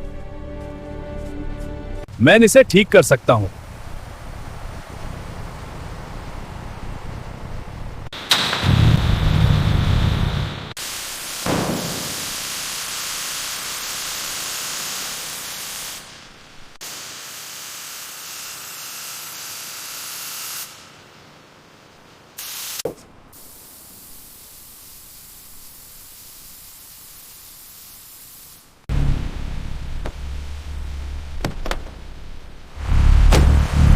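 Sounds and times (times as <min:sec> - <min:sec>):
spray gun hissing: 0:10.8 - 0:20.8, 0:22.4 - 0:28.9.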